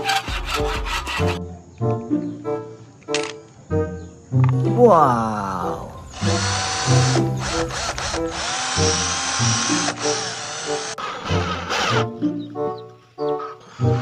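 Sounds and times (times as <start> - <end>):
light background music: 0.0 - 14.0
electric drill whirring: 6.1 - 12.0, 13.6 - 14.0.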